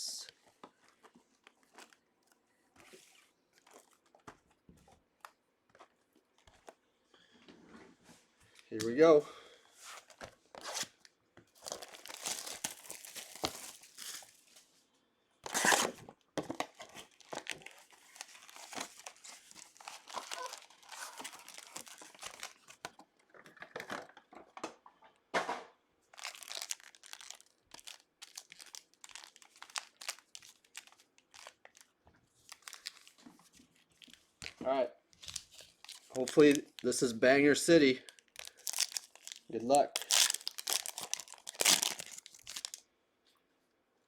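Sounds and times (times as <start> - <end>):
plastic wrapping crinkling: 0.4 - 4.6, 9.8 - 14.7, 15.4 - 23.0, 26.1 - 37.2, 37.8 - 42.8
plastic wrapping ripping: 10.5 - 14.4, 15.4 - 16.0, 16.6 - 22.9, 26.1 - 33.2, 35.2 - 37.1, 38.0 - 42.8.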